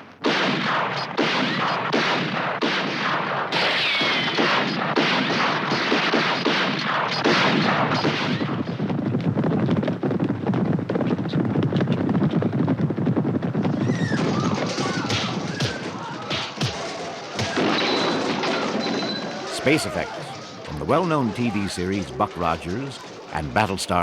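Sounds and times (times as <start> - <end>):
rapid gunfire: 0.0 - 24.0
crashes: 13.6 - 24.0.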